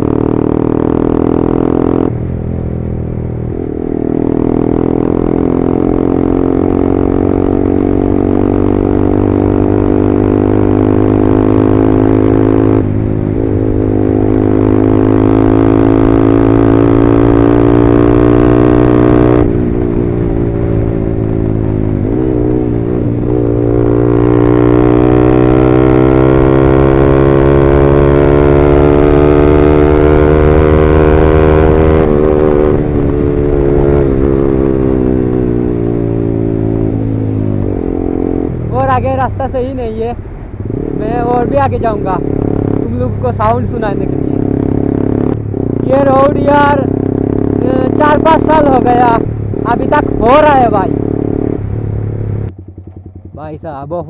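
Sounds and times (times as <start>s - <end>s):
motorcycle engine under load: 50.9s - 53.8s.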